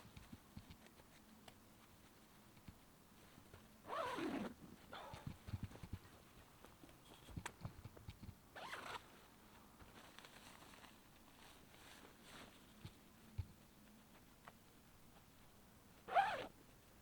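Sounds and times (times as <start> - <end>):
tent zipper zipping: 3.9 - 5.2, 8.6 - 9.0, 16.1 - 16.5.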